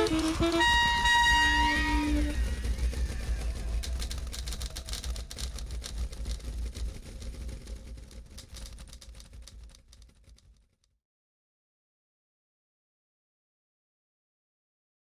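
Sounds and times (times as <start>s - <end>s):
low rumble: 0.0s - 10.6s
irregular clicks: 3.8s - 10.8s.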